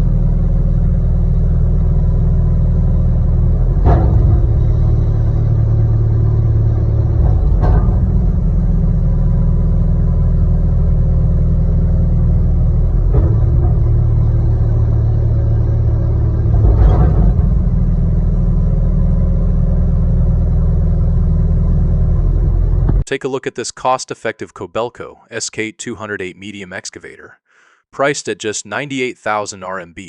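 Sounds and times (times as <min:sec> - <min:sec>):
diesel excavator engine rumbling: 0:00.0 - 0:23.1.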